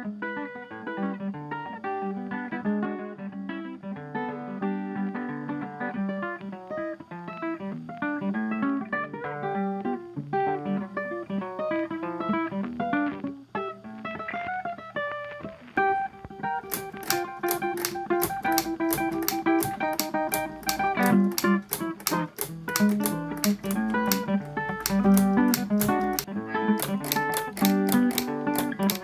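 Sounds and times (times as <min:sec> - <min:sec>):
instrumental guitar music: 0:00.0 - 0:29.0.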